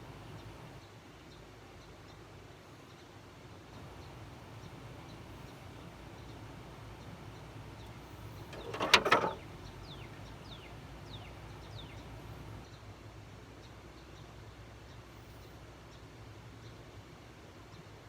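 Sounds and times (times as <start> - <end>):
clatter of knocks: 3.8 - 12.6
small bird calling: 3.8 - 12.6.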